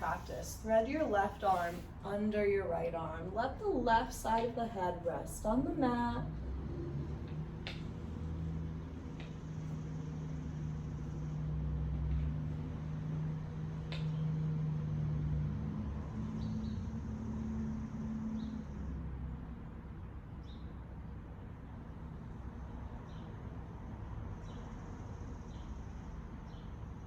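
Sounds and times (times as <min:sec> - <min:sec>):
vehicle passing by: 0:05.0 - 0:19.8.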